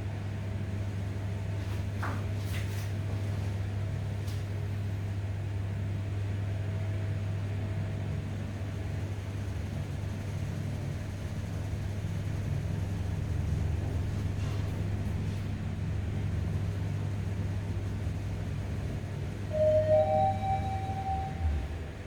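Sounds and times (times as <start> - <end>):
lift humming: 12.7 - 22.0.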